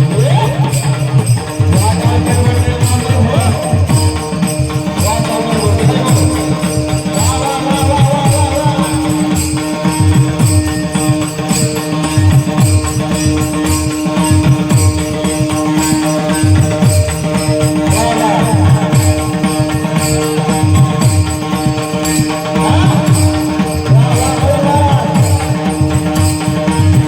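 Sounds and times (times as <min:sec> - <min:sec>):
drum beats: 0:00.0 - 0:27.0
hand cymbals striking: 0:00.0 - 0:27.0.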